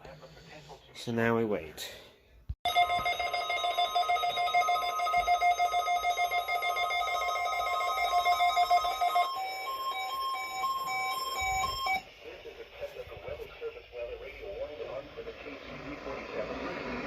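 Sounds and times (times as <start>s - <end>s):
weather radio alarm tones: 2.7s - 12.1s.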